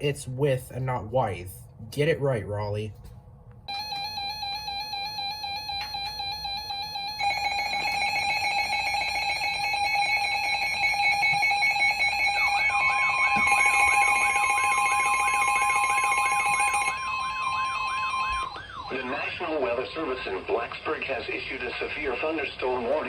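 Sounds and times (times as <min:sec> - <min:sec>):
wavering repeating tone: 0:03.7 - 0:18.8.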